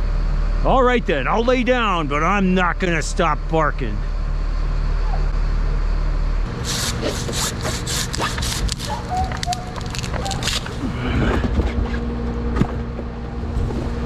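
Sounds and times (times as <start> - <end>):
truck engine humming: 0.0 - 14.0
crackling snaps and rustles: 6.7 - 10.9.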